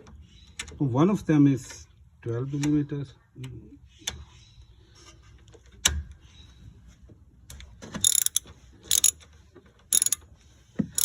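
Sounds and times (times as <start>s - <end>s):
ratchet wrench clicking: 8.0s - 9.2s, 9.9s - 10.2s.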